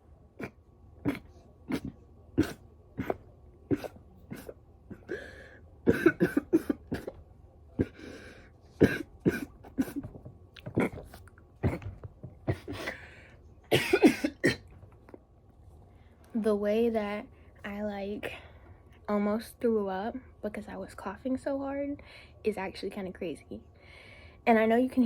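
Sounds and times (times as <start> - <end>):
woman coughing hard: 1.1 - 7.2, 7.8 - 8.2, 8.8 - 13.0, 13.7 - 14.6.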